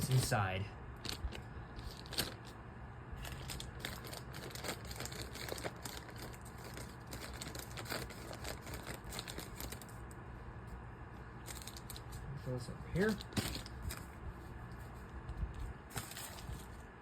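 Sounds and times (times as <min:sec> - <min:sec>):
packing material crinkling: 0:01.0 - 0:02.6, 0:03.2 - 0:10.2, 0:11.4 - 0:12.2, 0:13.0 - 0:14.9, 0:15.6 - 0:17.0.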